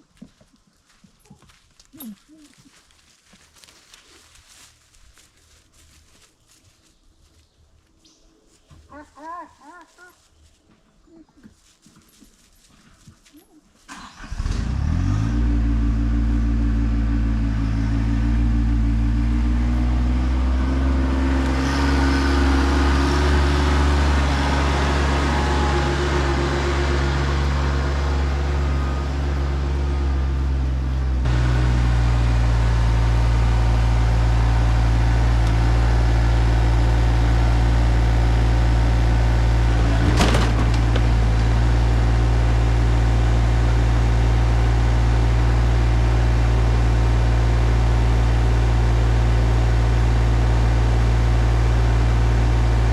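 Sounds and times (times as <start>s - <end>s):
tractor engine running: 13.0s - 52.9s.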